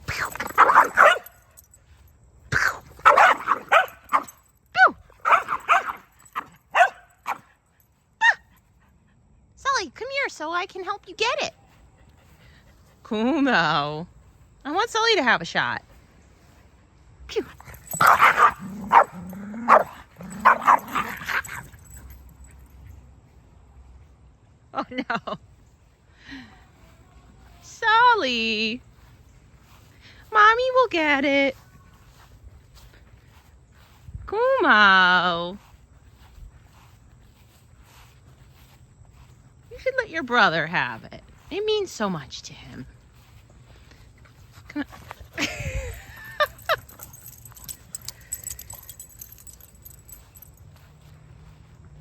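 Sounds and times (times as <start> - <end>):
dog barking excitedly: 0.1 - 1.4, 2.6 - 7.5, 18.0 - 21.6
dog yipping high-pitched: 0.1 - 1.4, 2.6 - 7.4, 8.2 - 8.6, 17.9 - 19.1.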